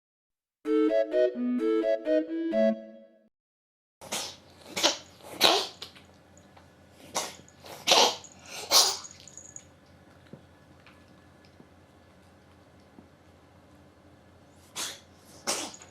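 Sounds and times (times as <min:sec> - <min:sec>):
cat sneezing: 0:04.0 - 0:05.9, 0:07.1 - 0:09.2, 0:14.6 - 0:15.9.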